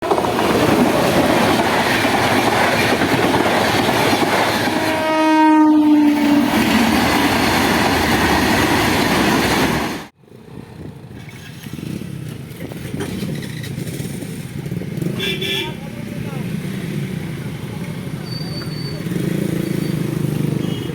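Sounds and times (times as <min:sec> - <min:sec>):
train wheels clattering over rails: 0:00.0 - 0:05.0
train horn: 0:04.6 - 0:06.6.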